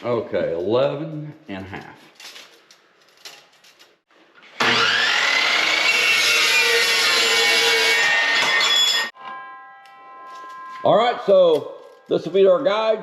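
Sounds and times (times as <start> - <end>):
chop saw cutting steel: 4.4 - 10.8.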